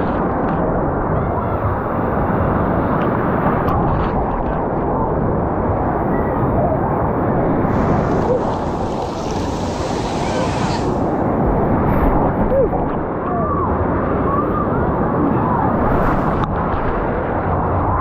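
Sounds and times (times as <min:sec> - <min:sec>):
waves surging and splashing: 0:07.6 - 0:12.5
bright hissing water rush: 0:07.7 - 0:11.5.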